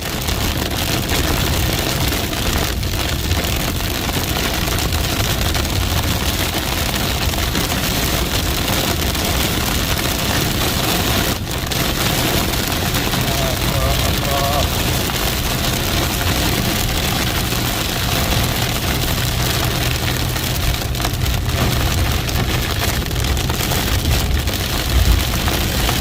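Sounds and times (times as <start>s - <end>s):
rain and hail on a vehicle: 0.0s - 26.0s
low rumble: 8.4s - 26.0s.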